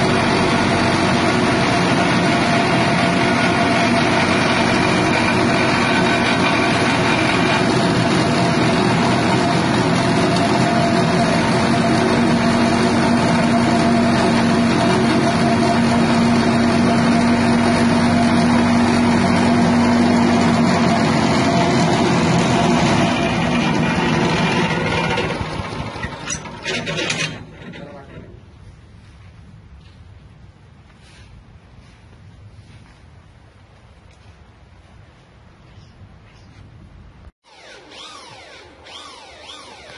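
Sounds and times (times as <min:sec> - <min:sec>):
petrol engine machine running: 0:00.0 - 0:28.7, 0:37.5 - 0:39.9.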